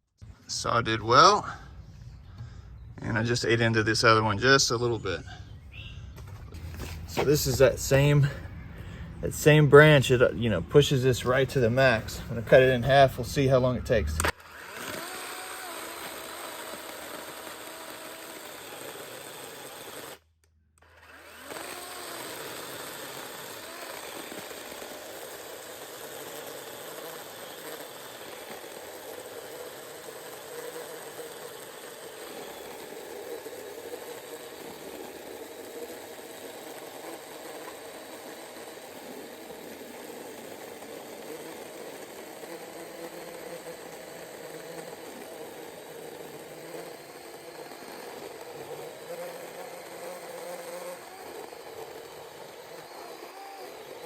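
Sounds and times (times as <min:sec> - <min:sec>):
electric chainsaw cutting branch: 0:06.1 - 0:54.0.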